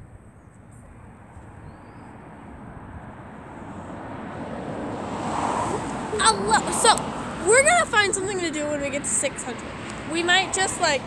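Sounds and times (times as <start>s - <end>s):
car approaching: 0.7s - 11.0s.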